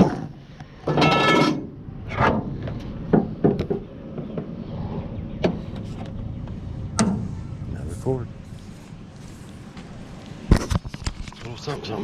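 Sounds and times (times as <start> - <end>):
vehicle running rumble: 0.0 - 12.0
sharp knocks and clunks: 0.8 - 4.6, 5.4 - 7.4.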